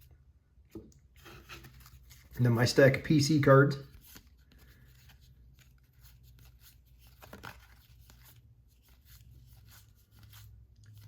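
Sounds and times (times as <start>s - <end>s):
cards being flipped by hand: 1.0s - 2.4s, 3.8s - 11.0s.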